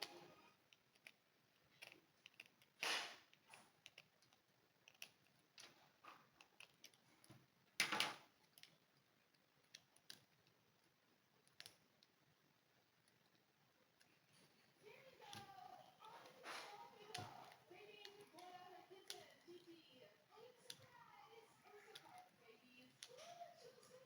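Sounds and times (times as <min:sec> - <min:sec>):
light clicks and taps: 0:13.0 - 0:19.8, 0:21.7 - 0:24.0.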